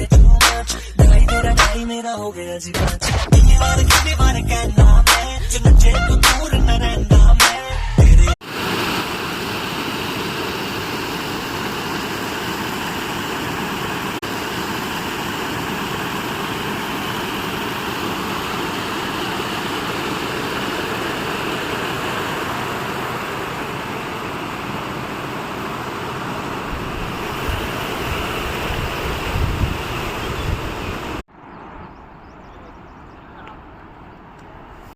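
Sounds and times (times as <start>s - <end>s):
rushing water roar: 8.4s - 31.2s.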